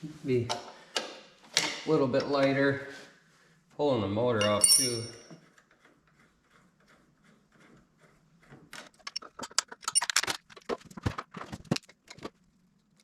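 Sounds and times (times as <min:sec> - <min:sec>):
hand tools clinking on metal: 0:04.4 - 0:05.3.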